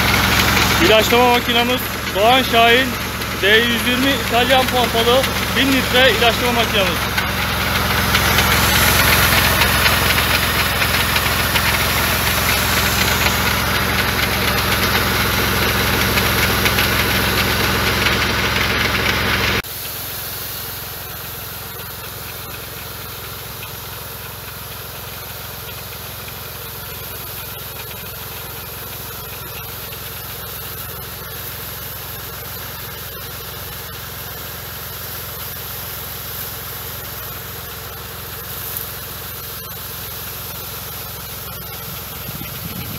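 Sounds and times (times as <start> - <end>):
tractor engine running: 0.0 - 42.9
broad hiss: 27.0 - 42.9.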